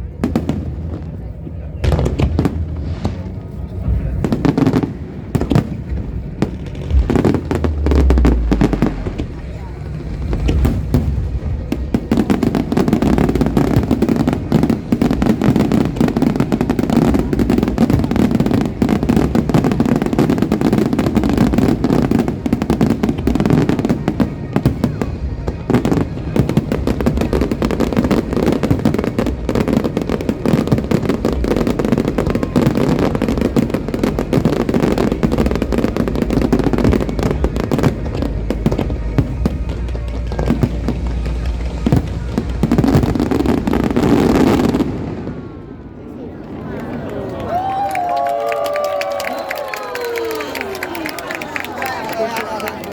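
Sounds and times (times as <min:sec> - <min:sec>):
fireworks bangs and crackles: 0:00.0 - 0:52.9
show music: 0:05.0 - 0:10.4.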